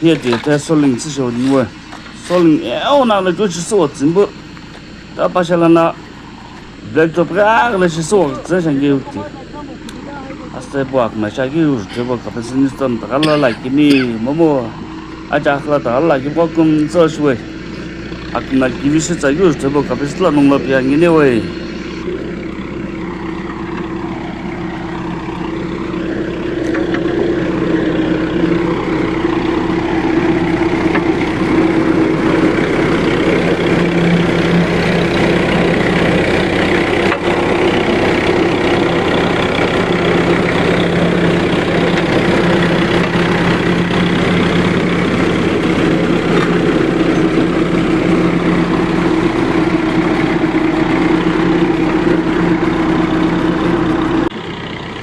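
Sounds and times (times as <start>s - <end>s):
heavy machinery engine humming: 0.0s - 55.0s.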